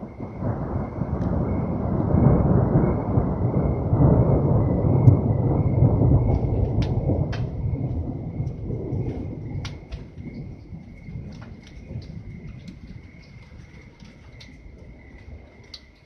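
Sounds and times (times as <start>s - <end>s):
rain: 0.0s - 16.0s
rolling thunder: 0.0s - 16.0s
sharp drip taps: 8.4s - 16.0s.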